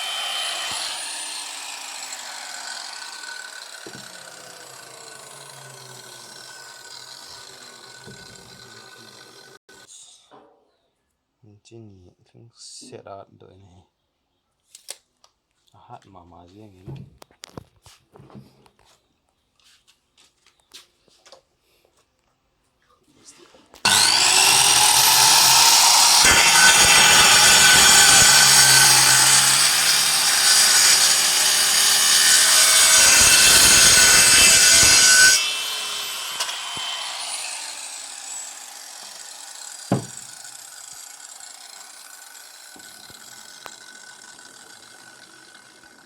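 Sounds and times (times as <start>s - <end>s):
circular saw cutting wood: 0.0s - 9.9s, 23.8s - 46.0s
knock: 39.9s - 40.2s.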